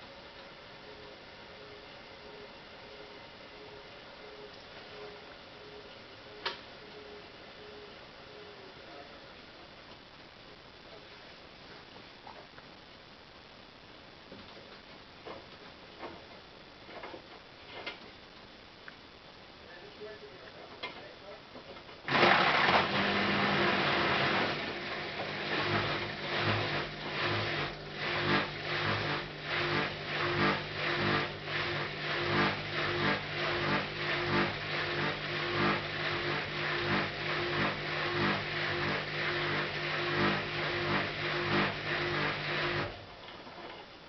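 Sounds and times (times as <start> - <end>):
washing machine hum: 22.1 - 43.2.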